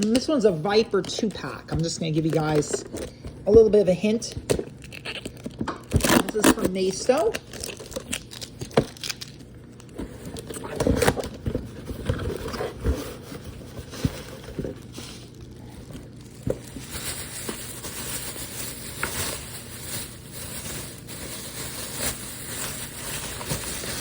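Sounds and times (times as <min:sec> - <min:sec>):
cardboard and plastic box handled: 0:10.0 - 0:19.8.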